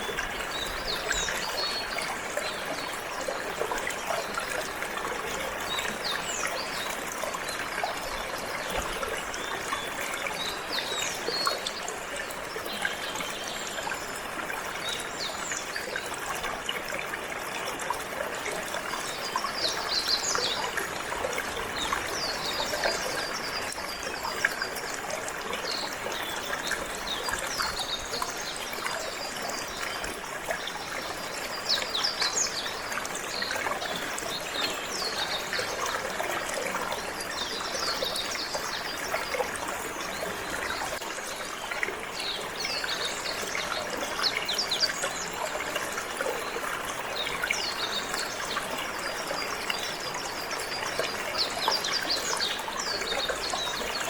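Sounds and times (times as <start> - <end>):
water trickling: 0.0 - 54.0.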